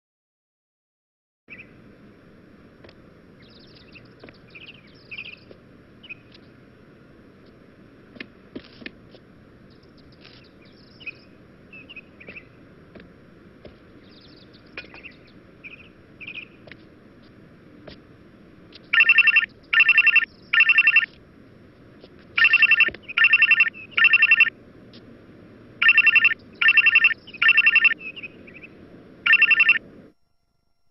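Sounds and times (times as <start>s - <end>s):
faint chirps: 3.4s - 6.5s, 9.7s - 12.6s, 14.0s - 16.7s, 22.4s - 24.5s, 25.8s - 29.8s
telephone ringing: 18.9s - 21.1s, 22.4s - 24.5s, 25.8s - 28.0s, 29.2s - 29.8s.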